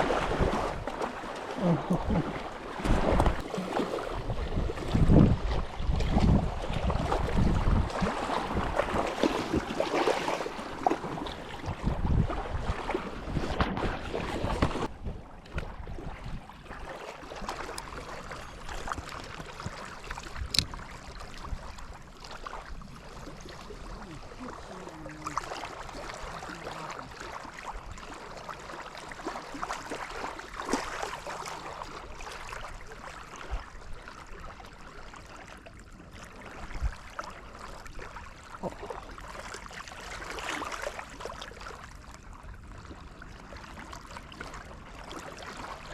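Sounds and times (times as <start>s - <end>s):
lake water lapping: 0.0s - 45.9s
wind buffeting microphone: 4.1s - 9.8s, 10.7s - 16.7s.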